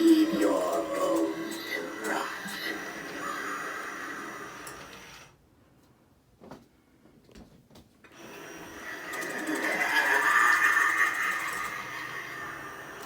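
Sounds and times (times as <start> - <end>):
animatronic motor whirring: 0.0 - 5.3, 8.2 - 13.0.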